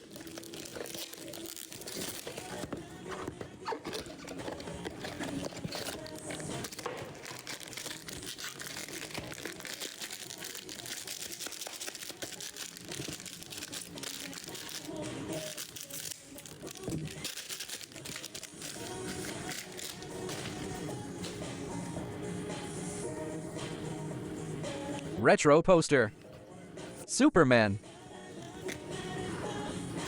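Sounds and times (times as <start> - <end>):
foil wrappers being torn open: 0.0 - 21.0
foil wrappers crinkling: 0.0 - 21.4.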